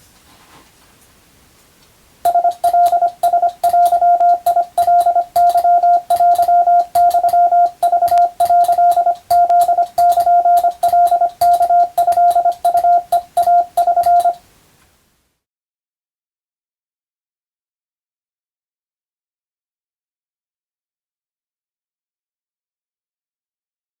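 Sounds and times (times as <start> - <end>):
keying clicks: 2.3 - 14.4
morse code tone: 2.3 - 14.4.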